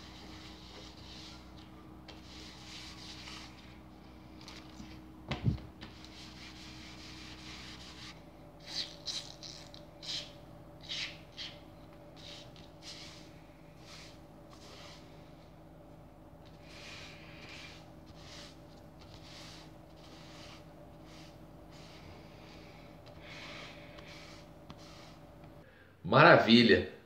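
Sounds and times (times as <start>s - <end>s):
cloth rubbing cardboard sleeve: 0.0s - 3.8s, 5.8s - 11.6s, 12.2s - 15.1s, 16.5s - 25.4s
faint steady hum: 0.0s - 27.0s.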